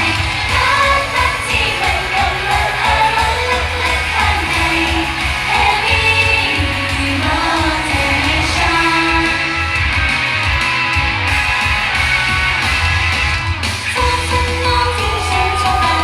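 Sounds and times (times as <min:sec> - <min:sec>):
woman singing: 0:00.0 - 0:09.6, 0:14.0 - 0:16.0
pulsing bass beat: 0:00.0 - 0:16.0.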